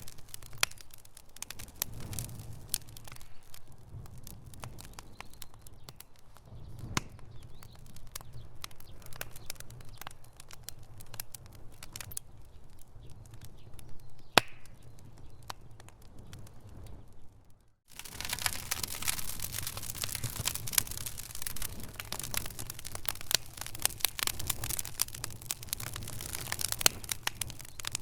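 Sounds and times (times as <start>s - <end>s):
sharp wood snaps: 0.0s - 3.6s, 14.2s - 15.7s, 17.9s - 28.0s
wood fire crackling: 0.0s - 28.0s.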